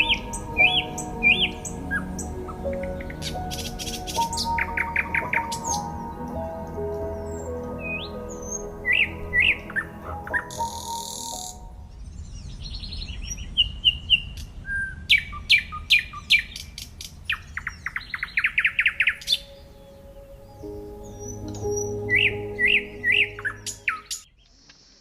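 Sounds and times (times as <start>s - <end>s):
soft background music: 0.0s - 12.2s, 17.6s - 24.3s
wild birds chirping: 0.0s - 25.0s.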